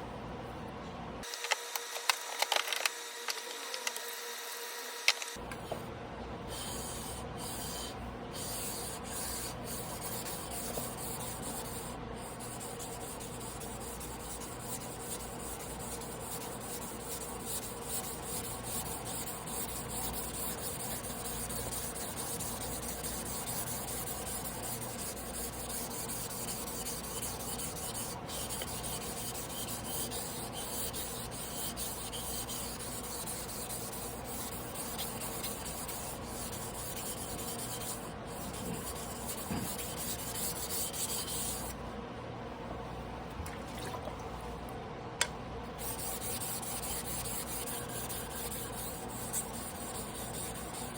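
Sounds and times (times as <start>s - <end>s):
knife scraping on whetstone: 6.6s - 41.8s, 45.8s - 50.9s.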